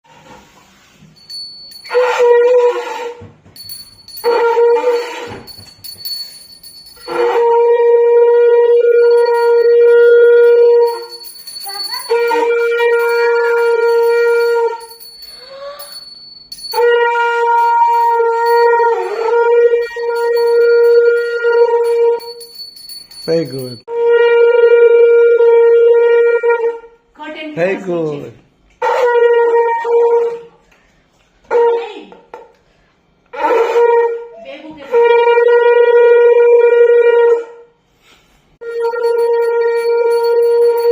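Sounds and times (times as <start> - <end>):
conch shell blown: 1.3 - 23.0, 23.8 - 26.8, 38.6 - 40.9.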